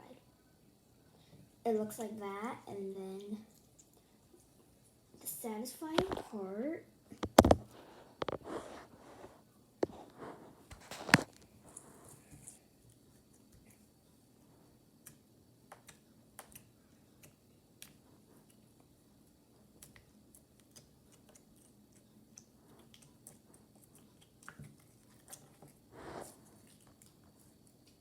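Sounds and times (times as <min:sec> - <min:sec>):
soft noise: 0:07.1 - 0:15.2, 0:25.4 - 0:28.0.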